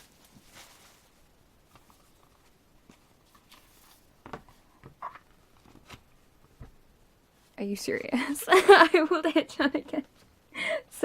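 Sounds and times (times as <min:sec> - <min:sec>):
album pages turning: 0:00.1 - 0:06.7.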